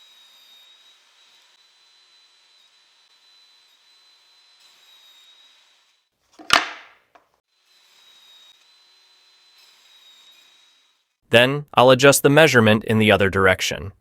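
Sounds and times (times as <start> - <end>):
power saw whine: 0.0 - 6.1, 7.5 - 11.2
saw cutting through wood: 0.0 - 6.2, 7.4 - 11.2.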